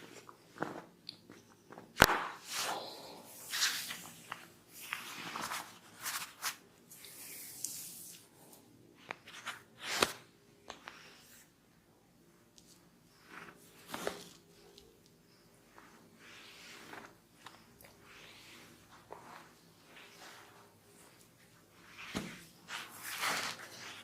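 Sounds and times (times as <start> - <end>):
hands rubbing over skin and hair: 2.2 - 8.3, 12.6 - 24.0.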